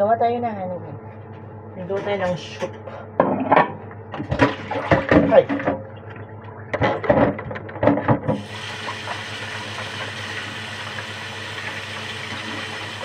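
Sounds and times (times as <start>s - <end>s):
water running from tap: 8.3s - 13.0s.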